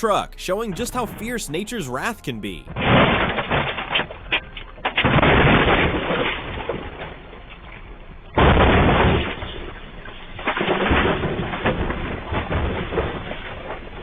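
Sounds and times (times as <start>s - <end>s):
rumbling: 2.7s - 14.0s
rock crashing onto a truck: 2.8s - 7.3s, 8.4s - 14.0s.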